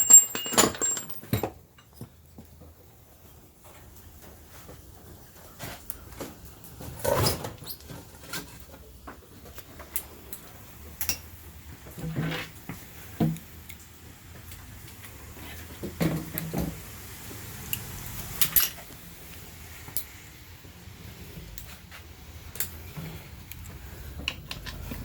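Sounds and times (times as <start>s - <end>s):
tools and metal parts clinking: 0.0s - 2.1s, 18.4s - 18.9s, 24.2s - 25.0s.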